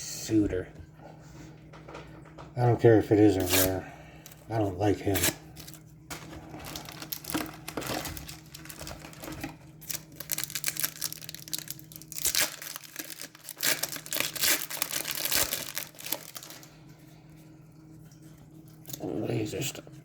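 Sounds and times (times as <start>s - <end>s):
faint steady hum: 0.0s - 20.0s
wrapper crinkling and tearing: 5.0s - 16.8s.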